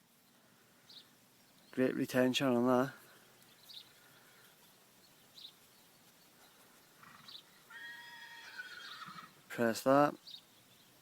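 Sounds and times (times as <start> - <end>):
faint bird chirps: 3.0 - 9.3
horse whinnying: 7.0 - 9.4.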